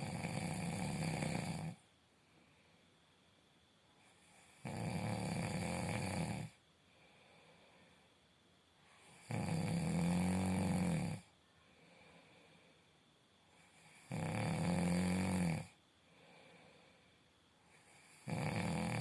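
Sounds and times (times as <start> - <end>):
person snoring: 0.0 - 1.8, 4.0 - 6.6, 9.0 - 11.3, 13.6 - 17.0, 17.7 - 19.0
faint breathing: 1.0 - 3.2, 6.4 - 9.2, 11.2 - 14.0, 16.0 - 18.3.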